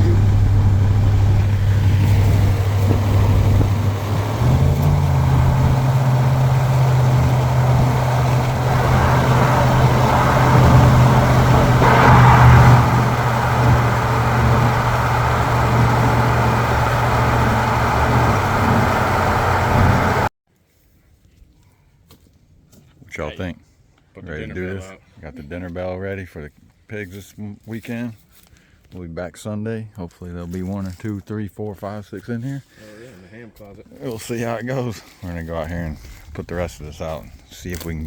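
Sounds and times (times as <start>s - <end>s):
vehicle engine running: 0.0s - 20.3s.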